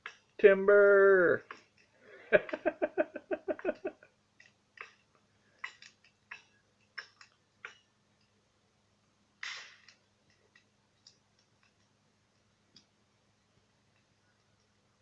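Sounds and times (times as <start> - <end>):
person laughing: 2.1 - 4.1.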